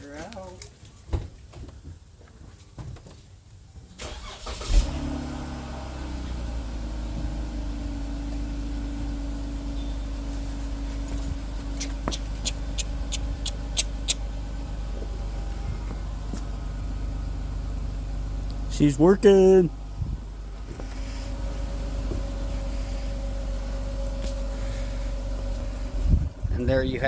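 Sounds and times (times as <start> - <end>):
car engine starting and idling: 4.0 - 27.0
turn signal ticking: 11.6 - 18.7.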